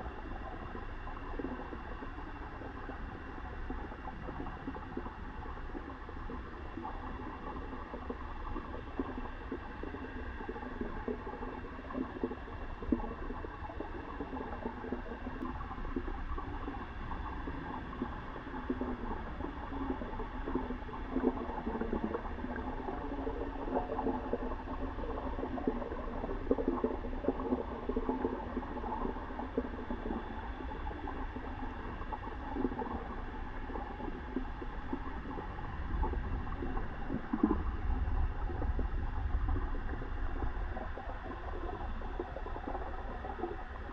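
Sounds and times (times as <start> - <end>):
water gurgling and bubbling: 0.0 - 43.9
low rumble: 34.8 - 43.2.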